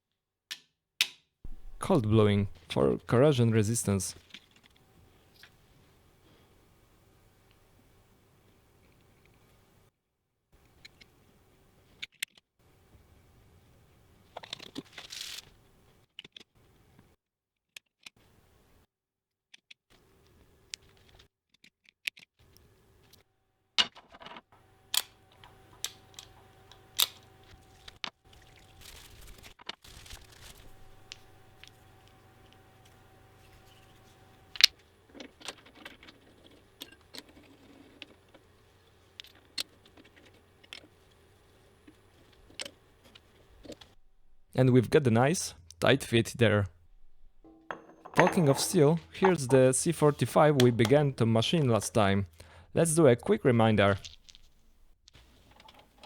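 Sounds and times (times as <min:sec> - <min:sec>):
faint machine hum: 0:01.5 - 0:09.9, 0:24.6 - 0:55.6
metal parts knocking: 0:47.0 - 0:49.8.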